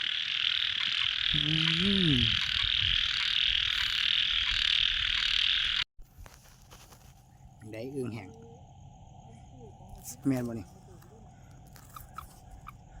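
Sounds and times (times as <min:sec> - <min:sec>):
frogs calling: 0:00.0 - 0:05.8, 0:07.3 - 0:13.0
person calling out: 0:01.3 - 0:02.5.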